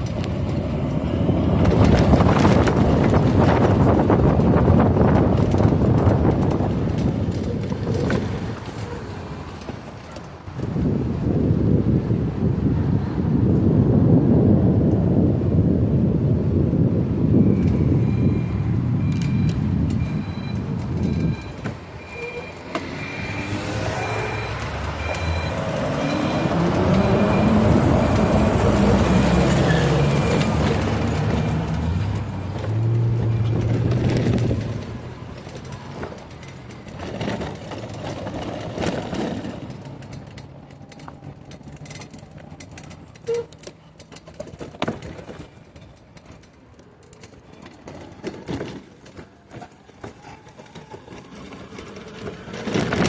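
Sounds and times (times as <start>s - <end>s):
motor vehicle passing: 22.7s - 42.5s
scattered clicks and knocks: 30.1s - 53.0s.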